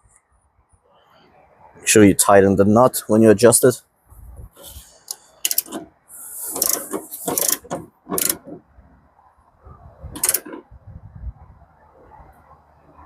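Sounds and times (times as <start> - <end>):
torque wrench clicking: 5.1 - 5.8, 6.5 - 8.5, 10.2 - 10.6.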